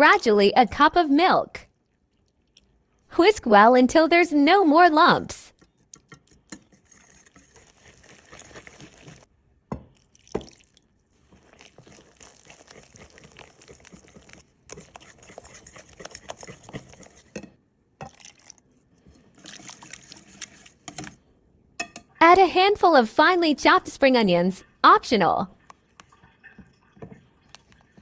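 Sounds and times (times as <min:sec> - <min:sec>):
whisk beating batter in bowl: 0:06.5 - 0:09.3, 0:11.3 - 0:17.4.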